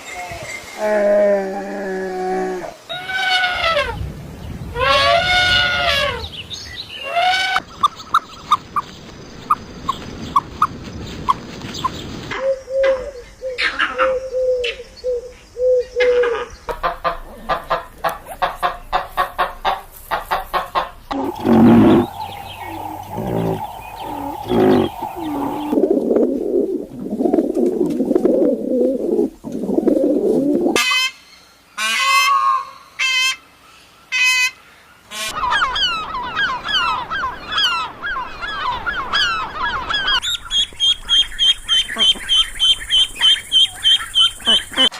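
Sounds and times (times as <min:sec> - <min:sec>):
higher honking calls: 0:04.7 - 0:06.4, 0:18.6 - 0:25.8
chickens clucking: 0:16.7 - 0:25.8, 0:40.5 - 0:44.9.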